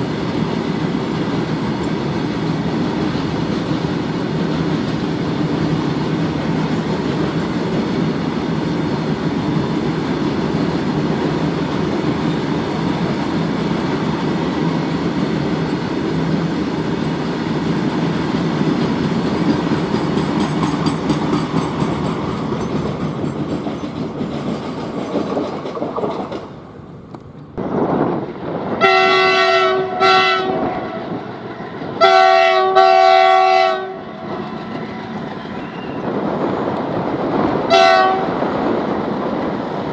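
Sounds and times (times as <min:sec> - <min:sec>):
diesel locomotive rumble: 0:00.0 - 0:39.9
wheel clatter: 0:17.2 - 0:26.6
locomotive horn blasts: 0:28.8 - 0:31.2, 0:32.0 - 0:34.2, 0:37.7 - 0:38.4.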